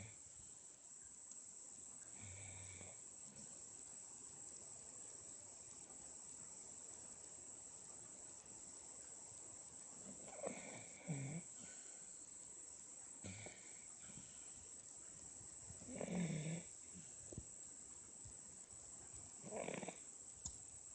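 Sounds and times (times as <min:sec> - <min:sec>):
baby snoring softly: 0:10.2 - 0:11.8, 0:15.8 - 0:17.1, 0:19.4 - 0:20.1.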